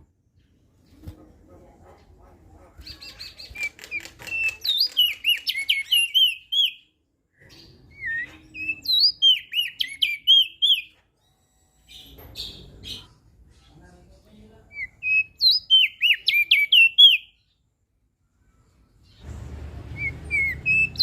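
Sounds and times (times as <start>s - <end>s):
bird singing high whistled notes: 4.4s - 12.2s, 14.8s - 17.4s, 19.9s - 21.0s.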